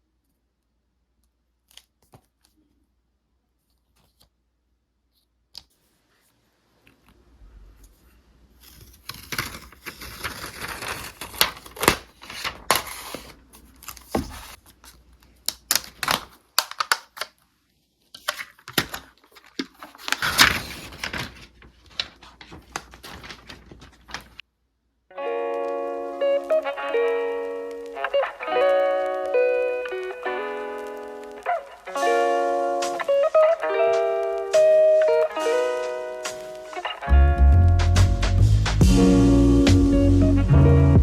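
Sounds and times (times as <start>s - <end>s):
paper and plastic tearing: 8.6s - 17.4s, 18.2s - 24.4s
music: 25.2s - 41.0s.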